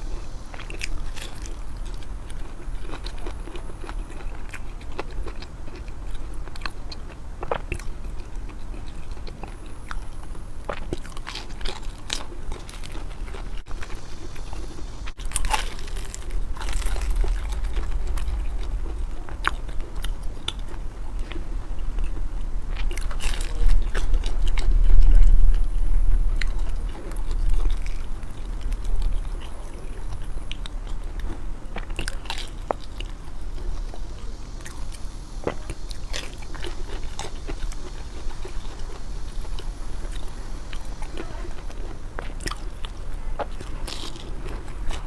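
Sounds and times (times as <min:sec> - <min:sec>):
chewing crunchy food: 0:00.0 - 0:45.0
low rumble: 0:09.0 - 0:44.0.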